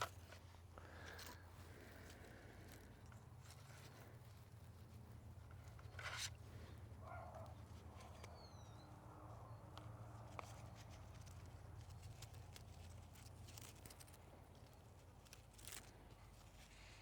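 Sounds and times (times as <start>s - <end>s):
rustling: 10.1s - 17.0s.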